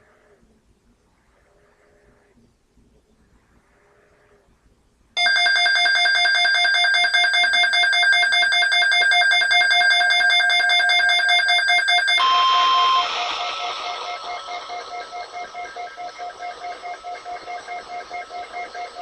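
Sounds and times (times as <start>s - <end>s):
steady electronic beep: 5.2s - 19.0s
harsh electronic data warble: 9.9s - 19.0s
radio hiss: 12.3s - 19.0s.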